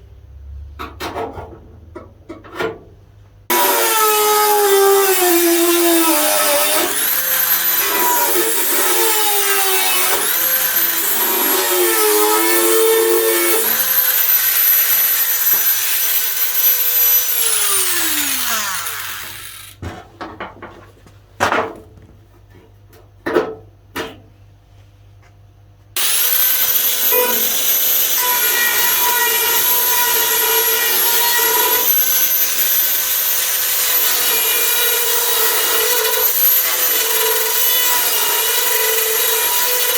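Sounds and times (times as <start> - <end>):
angle grinder on sheet steel: 3.5 - 19.8, 26.0 - 39.9.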